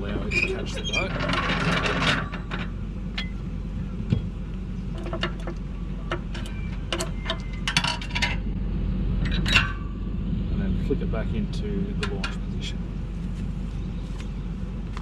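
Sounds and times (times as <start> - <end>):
steady low rumble: 0.0 - 15.0
metallic latch clicks and knocks: 5.0 - 8.4.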